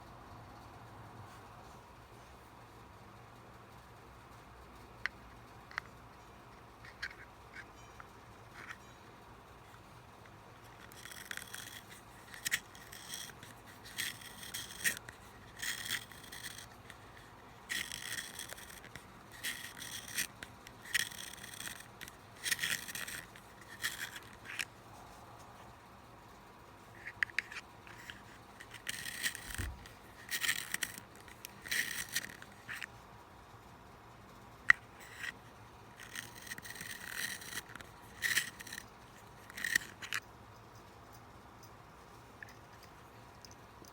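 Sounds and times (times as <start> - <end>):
pencil sharpener scraping: 6.7 - 9.0, 9.7 - 24.7, 27.0 - 33.0, 34.7 - 40.2.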